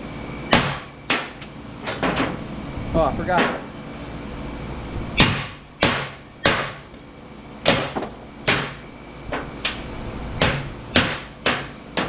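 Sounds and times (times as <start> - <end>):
hammer striking metal: 5.2 - 6.8, 7.7 - 8.8, 10.4 - 12.0.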